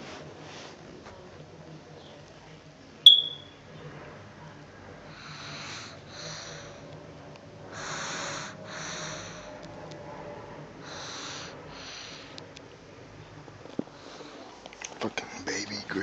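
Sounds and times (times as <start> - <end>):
sharp click with high ring: 3.1 - 3.5.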